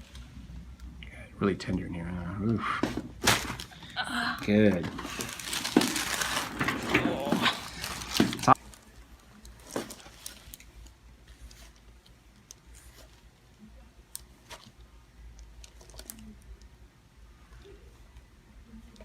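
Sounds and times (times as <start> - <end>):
soft rustles: 4.8 - 13.4.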